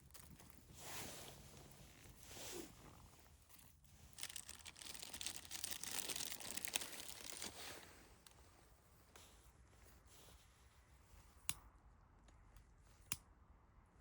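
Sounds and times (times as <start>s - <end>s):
crinkling crunching noise: 0.0s - 8.8s.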